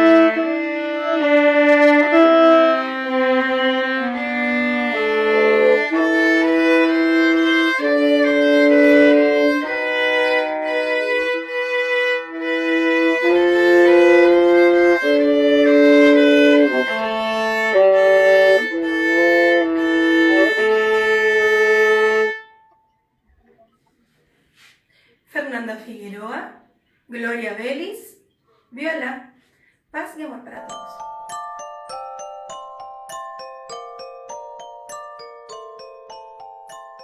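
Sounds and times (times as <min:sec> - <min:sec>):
violas playing bowed notes: 0:00.0 - 0:22.9.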